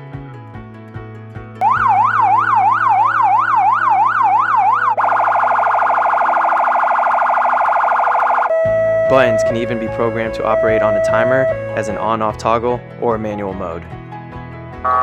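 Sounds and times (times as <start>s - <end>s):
police siren yelp and warble: 1.6s - 12.1s.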